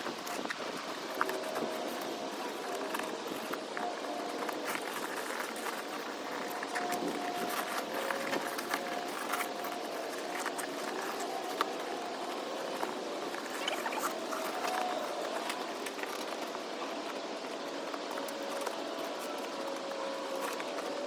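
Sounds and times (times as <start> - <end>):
faint wavering hum: 0.0 - 21.0.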